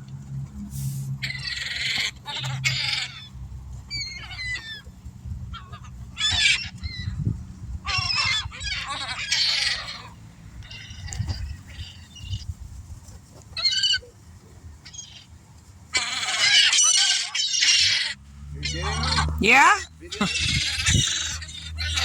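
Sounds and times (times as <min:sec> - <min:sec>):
seagulls squawking: 0:01.2 - 0:03.3, 0:03.9 - 0:04.9, 0:05.5 - 0:07.2, 0:07.8 - 0:12.4, 0:13.6 - 0:14.1, 0:16.0 - 0:22.0.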